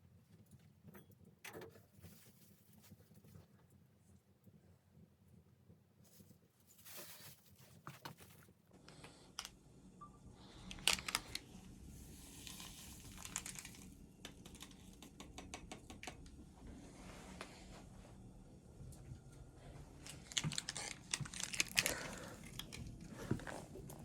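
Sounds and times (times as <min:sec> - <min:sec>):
crinkling and tearing: 0:10.7 - 0:11.5, 0:12.3 - 0:14.8, 0:20.0 - 0:24.0
sharp clicks and taps: 0:14.2 - 0:16.4.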